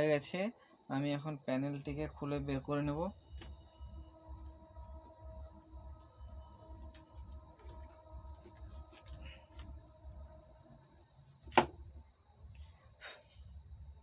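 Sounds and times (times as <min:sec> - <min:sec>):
crickets chirring: 0:00.0 - 0:14.0
sharp knock of metal panel: 0:11.5 - 0:11.8.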